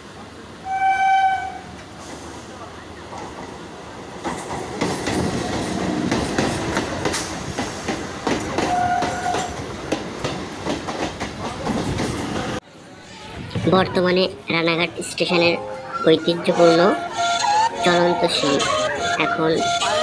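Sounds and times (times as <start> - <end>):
train wheels clacking on rails: 3.1 - 12.6.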